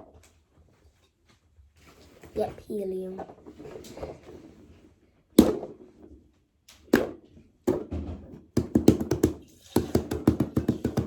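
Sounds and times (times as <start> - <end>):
hands tapping a toy: 8.6 - 11.0.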